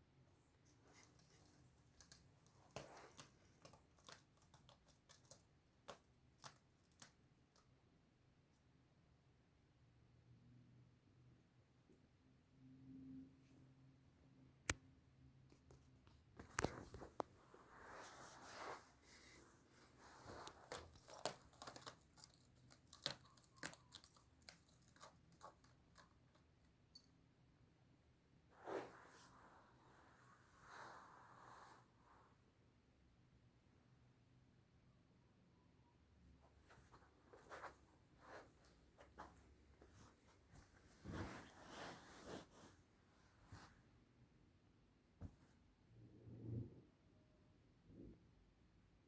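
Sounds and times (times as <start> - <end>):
kitten scuffle: 0.5 - 7.2, 16.4 - 26.4, 36.4 - 43.9
kitten tapping and clicking: 1.9 - 7.7.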